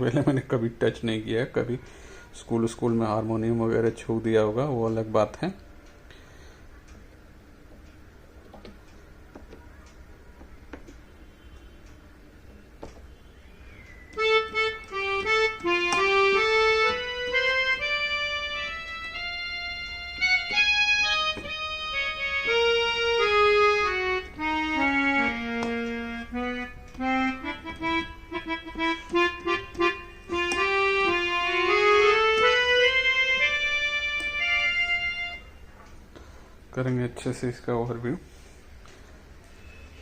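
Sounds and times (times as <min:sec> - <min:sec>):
keyboard harmonium melody: 0:14.1 - 0:35.8.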